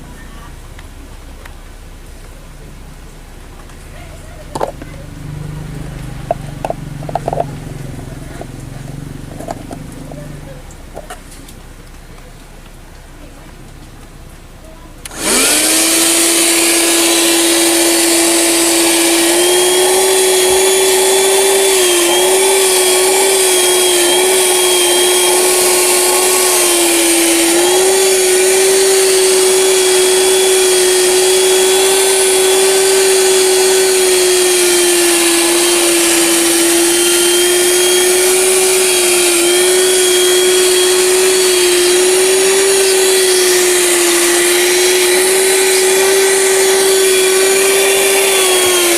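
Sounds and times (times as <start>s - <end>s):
handheld vacuum cleaner whining: 5.6s - 10.2s, 15.0s - 48.9s.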